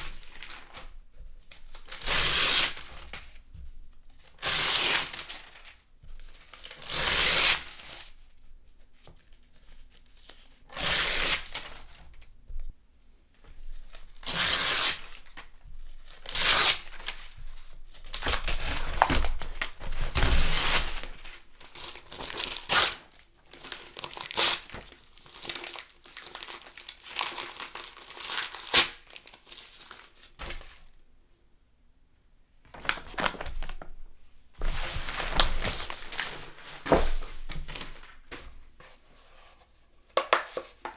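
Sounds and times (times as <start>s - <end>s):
glossy paper crinkling: 17.9s - 22.8s, 32.7s - 38.8s
magazine pages tearing: 32.7s - 34.0s, 35.0s - 38.4s.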